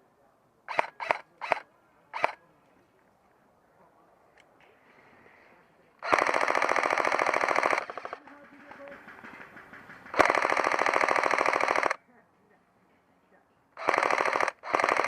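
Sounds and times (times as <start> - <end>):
airsoft gun full-auto bursts: 0.7 - 1.6, 6.0 - 12.0, 13.8 - 15.0.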